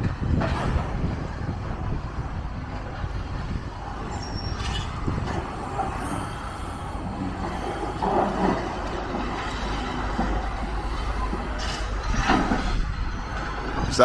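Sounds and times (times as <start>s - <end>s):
heavy engines rumbling: 0.0s - 14.0s
loud clatter: 3.4s - 14.0s.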